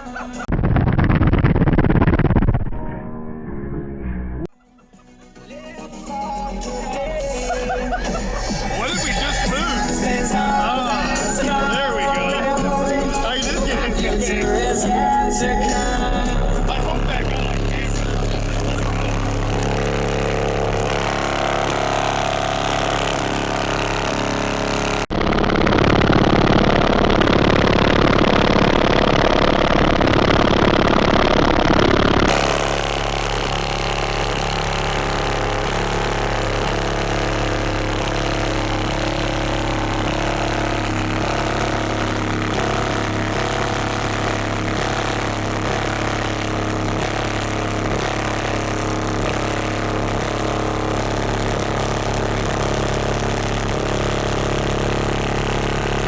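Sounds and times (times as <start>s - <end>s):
subwoofer buzzing bass: 0.0s - 4.5s, 6.1s - 56.0s.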